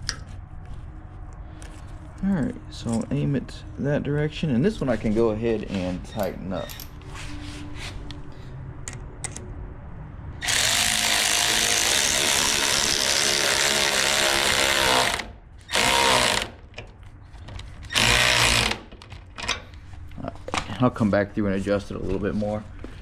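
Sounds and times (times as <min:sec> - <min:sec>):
power tool tightening clamp: 0:10.4 - 0:16.6, 0:17.8 - 0:18.9.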